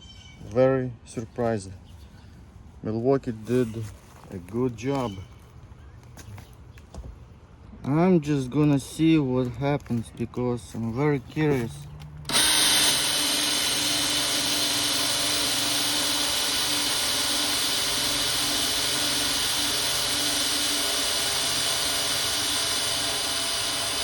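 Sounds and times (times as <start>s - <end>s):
power drill cutting into metal: 12.3s - 24.0s.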